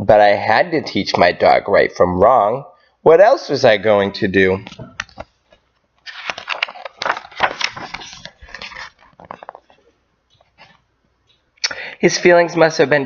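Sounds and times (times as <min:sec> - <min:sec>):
paper pages rustling: 0:04.9 - 0:10.8.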